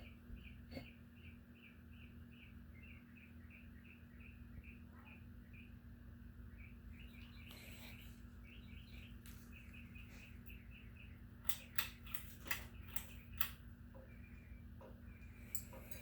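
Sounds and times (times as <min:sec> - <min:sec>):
ceiling fan motor hum: 0:00.0 - 0:16.0
faint chirps: 0:00.0 - 0:16.0
sharp clicks and ticks: 0:11.3 - 0:16.0.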